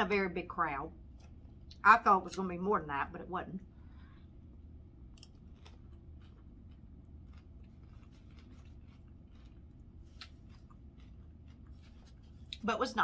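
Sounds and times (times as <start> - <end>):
low steady hum: 0.0 - 13.0
person chewing food: 3.9 - 12.6
faint crunches: 5.1 - 12.6.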